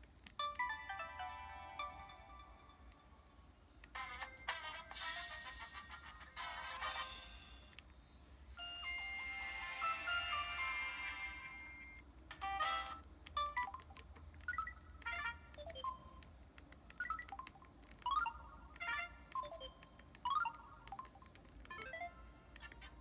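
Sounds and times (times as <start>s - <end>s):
phone electronic chiming melody: 8.5s - 16.2s.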